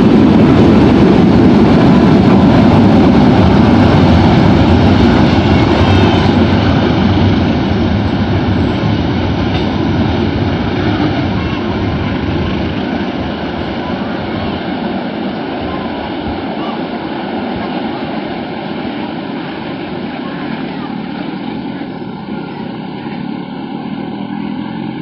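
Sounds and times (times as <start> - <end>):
train rumbling on rails: 0.0 - 25.0.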